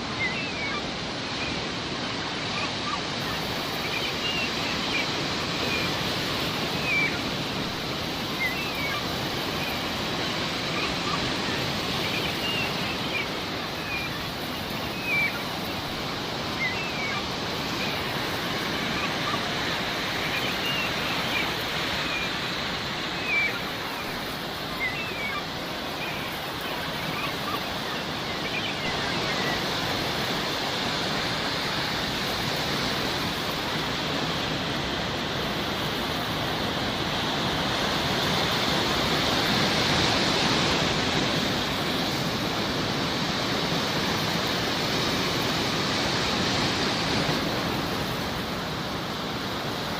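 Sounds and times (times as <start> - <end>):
sea waves washing on shore: 0.0 - 49.9
seagull cries: 0.1 - 1.6, 6.6 - 31.9.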